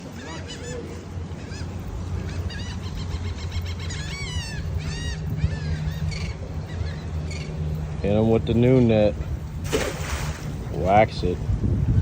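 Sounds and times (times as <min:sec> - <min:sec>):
birds honking calls: 0:00.0 - 0:08.3
steady low rumble: 0:01.0 - 0:12.0.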